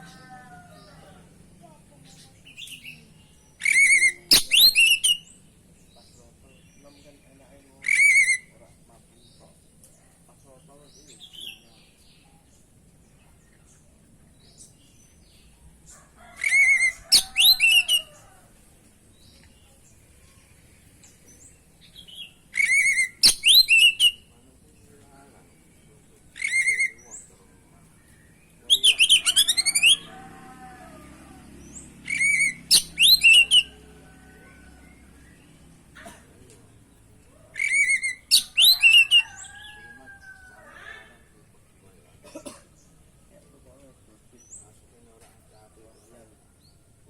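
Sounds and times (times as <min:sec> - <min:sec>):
bird singing: 0:00.0 - 0:18.5, 0:19.1 - 0:42.1
bird singing warbled whistles: 0:03.6 - 0:05.3, 0:22.6 - 0:24.2, 0:37.6 - 0:39.2.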